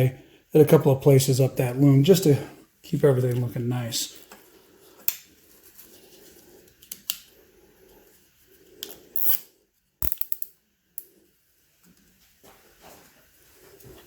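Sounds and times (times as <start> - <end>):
zip ties ratcheting: 8.8 - 10.5.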